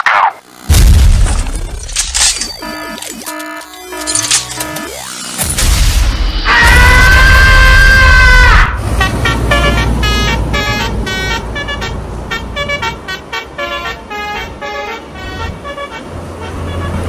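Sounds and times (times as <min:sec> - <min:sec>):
bus horn toots playing a tune: 0:02.6 - 0:04.8, 0:08.8 - 0:17.0
long horn blast: 0:08.8 - 0:17.0.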